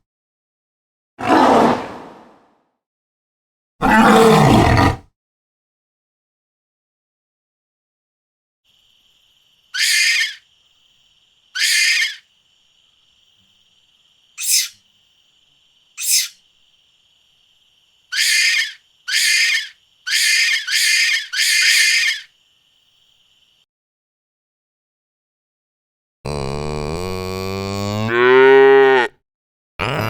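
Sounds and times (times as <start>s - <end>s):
animal hissing screech calls: 9.6s - 10.5s, 11.5s - 12.3s, 14.3s - 14.9s, 15.9s - 16.4s, 18.1s - 22.4s.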